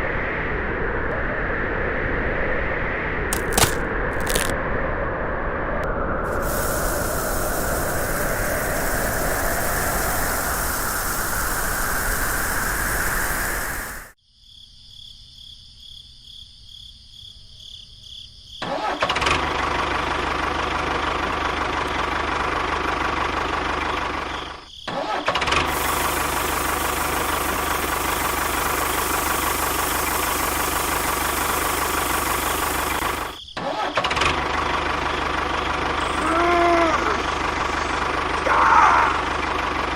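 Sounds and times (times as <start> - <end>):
high whine: 0.0 - 14.2
engine running: 6.3 - 14.2, 18.8 - 39.9.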